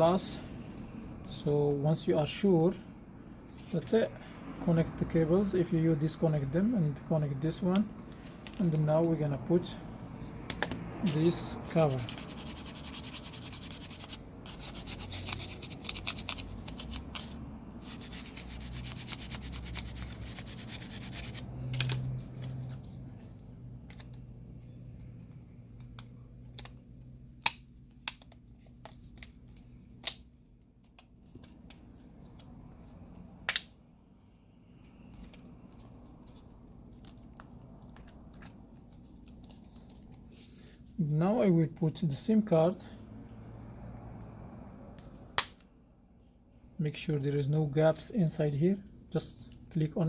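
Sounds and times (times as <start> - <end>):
plastic rubbing and scraping: 11.1 - 21.4.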